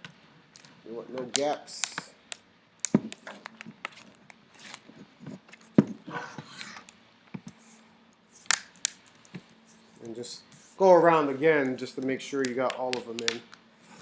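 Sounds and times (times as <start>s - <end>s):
handling scrapes: 3.9s - 6.9s, 9.1s - 12.0s.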